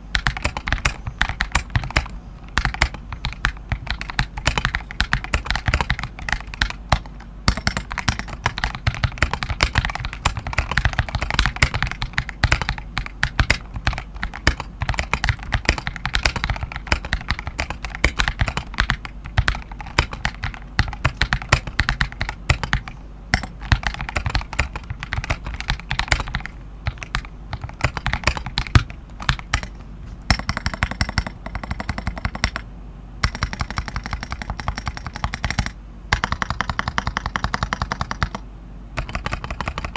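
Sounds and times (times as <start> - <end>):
mechanical keyboard typing: 0.0 - 38.4, 39.0 - 39.9.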